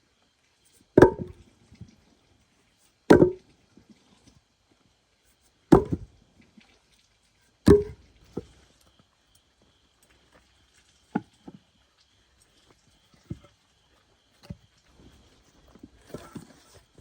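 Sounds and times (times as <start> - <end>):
blade chopping wood: 1.0 - 1.4, 3.1 - 3.4, 5.7 - 6.1, 7.7 - 8.0.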